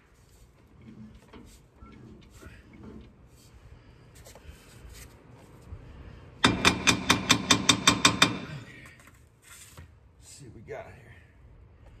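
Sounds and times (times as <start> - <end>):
hammer tapping on metal: 6.4 - 8.5.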